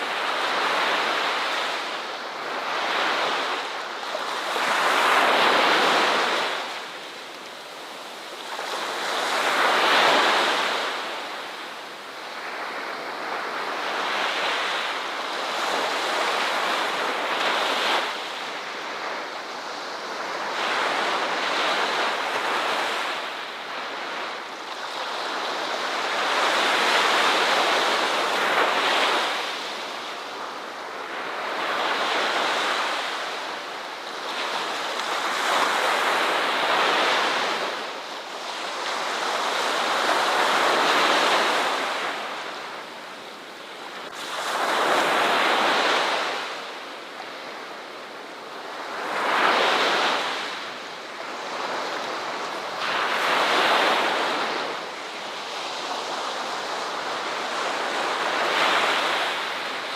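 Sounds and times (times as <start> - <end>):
ocean surf washing onto shore: 0.0 - 59.9.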